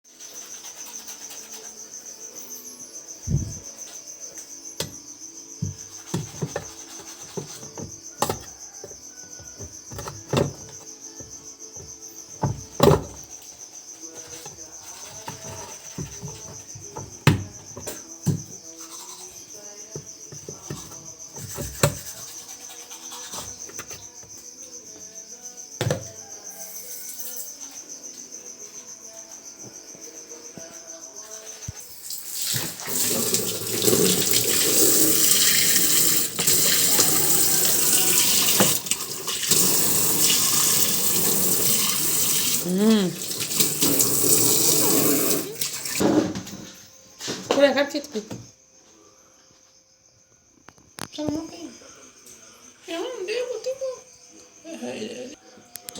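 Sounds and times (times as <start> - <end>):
cricket trilling: 0.1 - 55.9
water running from a tap: 31.9 - 46.0.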